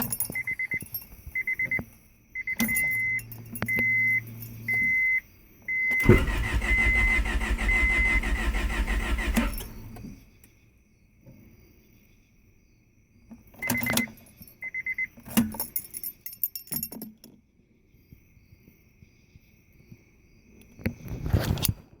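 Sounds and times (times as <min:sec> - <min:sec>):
car keys jangling and clicking: 0:00.0 - 0:01.8, 0:02.5 - 0:05.0, 0:05.9 - 0:10.2, 0:13.6 - 0:17.2.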